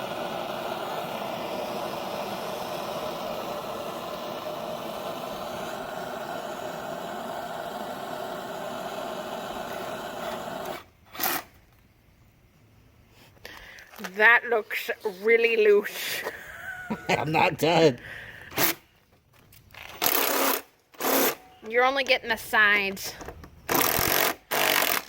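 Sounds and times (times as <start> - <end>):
torch flame hissing: 0.0 - 11.9.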